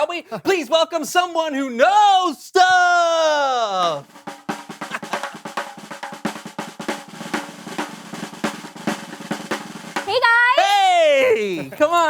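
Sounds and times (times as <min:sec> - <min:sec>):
snare drum roll: 0:03.8 - 0:10.5.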